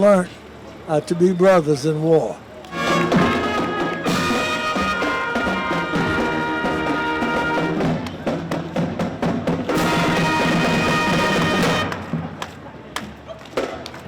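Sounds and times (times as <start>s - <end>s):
drum strikes: 2.7s - 12.4s
marching band horns: 2.7s - 12.5s.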